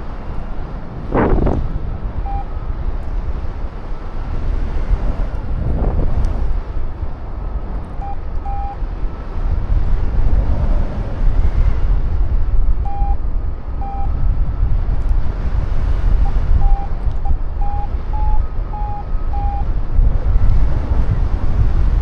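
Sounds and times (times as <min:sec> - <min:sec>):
wind buffeting microphone: 0:00.0 - 0:22.0
short single-pitch beeps: 0:02.2 - 0:02.6, 0:08.0 - 0:08.8, 0:12.8 - 0:13.2, 0:13.8 - 0:14.2, 0:16.2 - 0:19.7.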